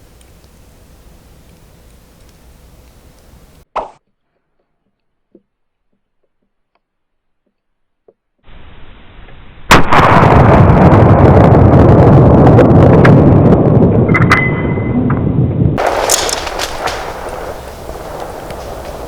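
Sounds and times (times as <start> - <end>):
heavy rumbling: 0.0 - 3.6, 15.8 - 19.0
rifle shot: 15.8 - 19.0.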